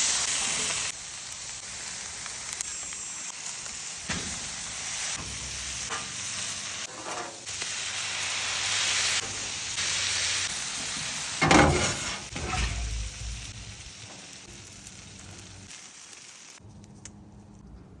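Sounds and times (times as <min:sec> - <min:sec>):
stir-fry sizzling in a pan: 0:00.0 - 0:16.6.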